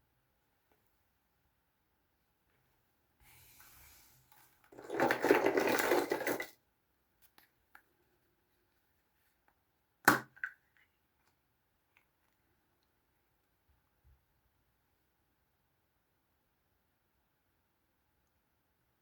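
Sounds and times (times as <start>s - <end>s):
plastic crackling rattle: 4.7s - 6.6s.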